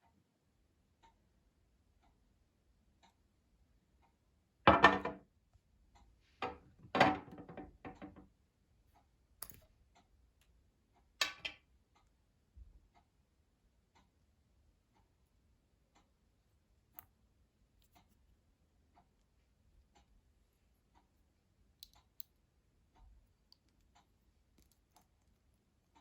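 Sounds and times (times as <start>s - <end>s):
faint regular ticking: 16.9s - 26.0s.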